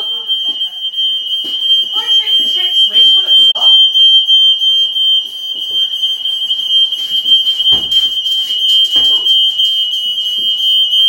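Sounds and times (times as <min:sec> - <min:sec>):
fire alarm high-pitched tone: 0:00.0 - 0:11.0
thump: 0:07.7 - 0:08.0.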